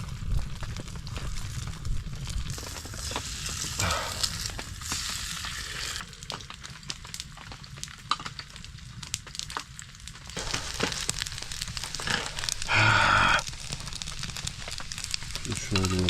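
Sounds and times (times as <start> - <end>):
fire pops and crackles: 0.0 - 16.0
sausage sizzling over fire: 0.0 - 16.0.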